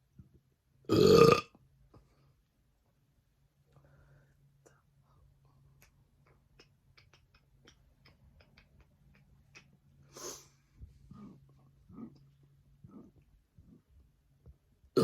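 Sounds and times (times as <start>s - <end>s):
soft low gulps: 10.8s - 14.2s.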